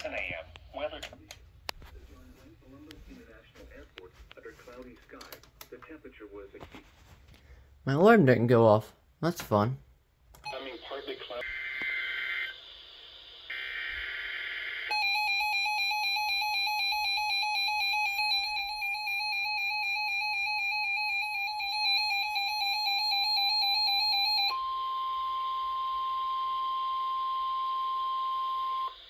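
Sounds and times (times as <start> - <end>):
steady warning alarm tone: 13.5 - 29.0.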